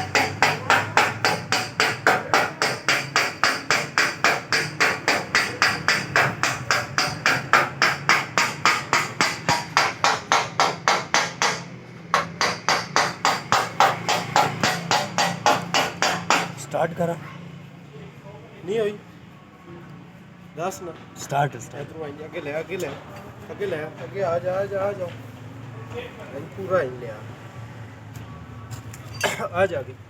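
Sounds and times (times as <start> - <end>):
hammer striking sheet metal: 0.0 - 16.6.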